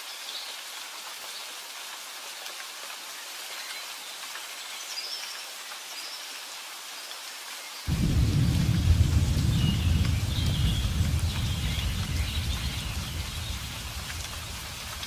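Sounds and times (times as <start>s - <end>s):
steady rain falling: 0.0s - 15.0s
deep rumble of thunder: 7.9s - 15.0s.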